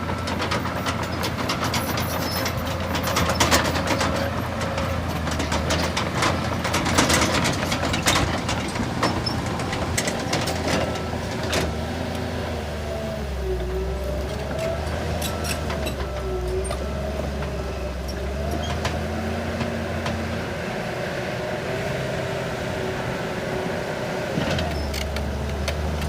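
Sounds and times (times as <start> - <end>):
metal clanks and knocks: 0.0 - 11.8
diesel machinery running: 0.0 - 26.0.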